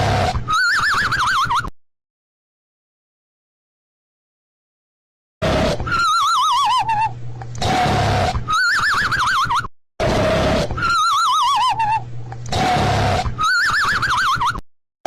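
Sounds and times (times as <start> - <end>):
cartoon rasping snore: 0.0 - 0.8, 5.4 - 7.0, 7.6 - 9.0, 10.0 - 14.3
wobbling sliding whistle: 5.9 - 7.8, 8.5 - 9.7, 10.7 - 12.0.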